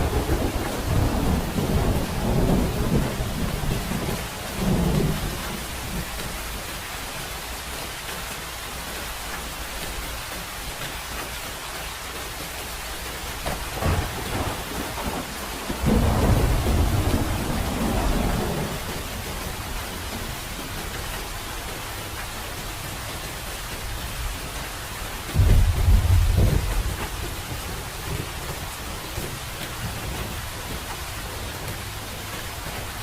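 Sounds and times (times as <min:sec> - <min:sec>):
thunder rumbling: 0:00.0 - 0:06.2, 0:13.4 - 0:20.5, 0:25.2 - 0:30.9
steady rain: 0:00.0 - 0:33.0.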